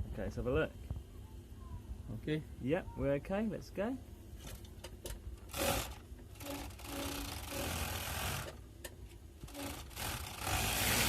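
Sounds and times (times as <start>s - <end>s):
sewing machine stitching: 5.5s - 8.6s, 9.5s - 11.0s.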